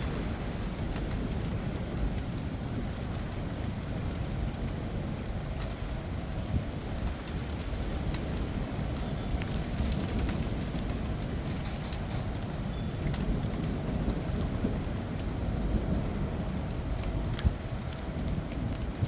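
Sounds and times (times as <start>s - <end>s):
low thunder rumble: 0.0s - 19.0s
raindrops ticking on surfaces: 0.0s - 19.0s
steady rain: 0.0s - 19.0s.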